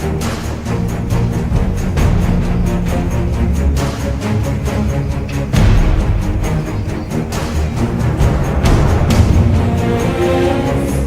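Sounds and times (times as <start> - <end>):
bass-heavy music with steady beat: 0.0 - 11.0.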